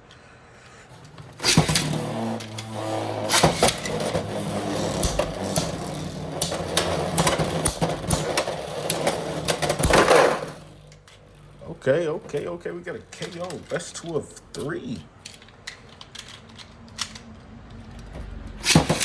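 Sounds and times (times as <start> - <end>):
spinning tops launched: 0.9 - 10.9, 18.6 - 19.0
spinning tops clacking: 0.9 - 11.2, 18.6 - 19.0
spinning tops whirring: 0.9 - 11.6, 18.6 - 19.0.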